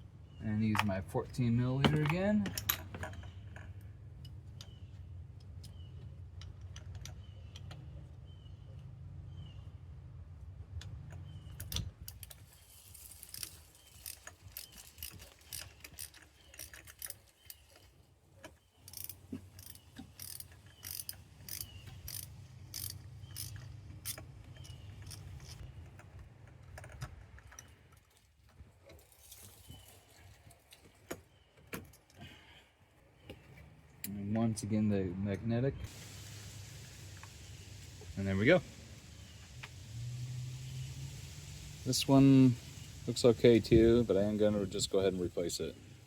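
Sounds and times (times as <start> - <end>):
ratchet wrench clicking: 11.6 - 17.8, 18.8 - 25.6.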